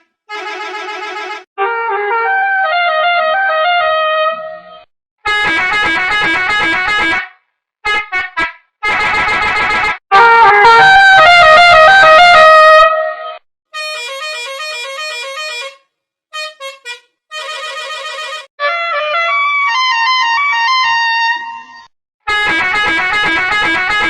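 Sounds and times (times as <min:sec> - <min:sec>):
musical bus horn melody: 0:00.0 - 0:07.2, 0:07.9 - 0:12.8, 0:13.7 - 0:19.4, 0:22.3 - 0:24.0
quick horn toots: 0:13.8 - 0:15.8, 0:16.4 - 0:18.5.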